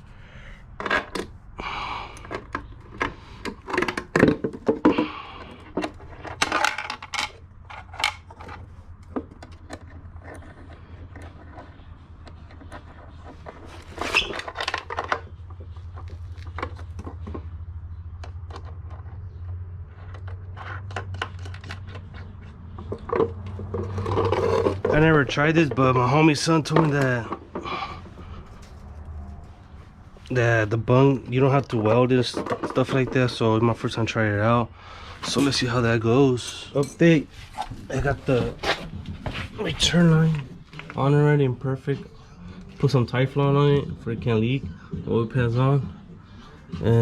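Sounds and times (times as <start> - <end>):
metal parts clinking and scraping: 2.2 - 17.2, 20.0 - 28.9.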